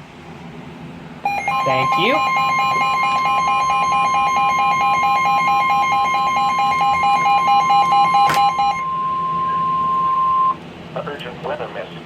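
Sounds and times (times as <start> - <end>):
rapid pulsed alarm beeping: 1.2 - 10.6
steady alarm tone: 1.2 - 10.6.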